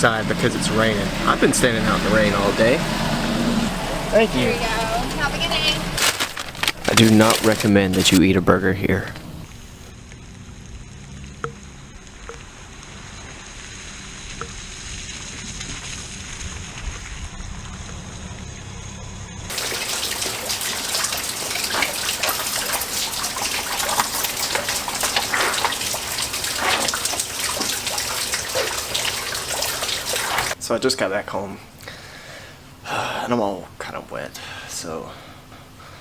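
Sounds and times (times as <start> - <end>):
low steady rumble: 0.0 - 6.9
heavy rain pattering: 0.0 - 10.7, 19.5 - 30.6.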